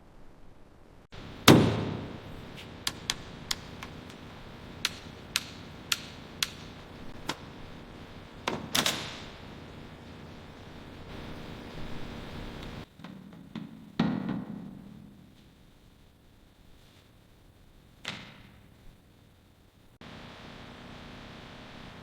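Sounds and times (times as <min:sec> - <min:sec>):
heavy thud: 0:01.5 - 0:02.3.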